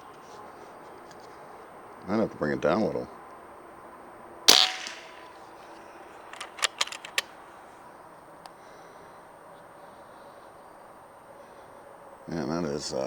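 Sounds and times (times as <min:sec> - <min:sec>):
rifle clicks: 0:04.5 - 0:05.3, 0:06.3 - 0:07.4
pellet rifle shot: 0:04.5 - 0:05.4.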